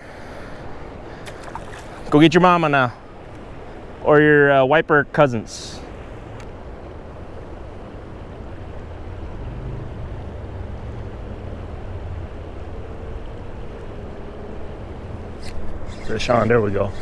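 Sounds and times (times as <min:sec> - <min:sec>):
faint steady hum: 0:00.0 - 0:17.0
low outdoor rumble: 0:05.2 - 0:17.0.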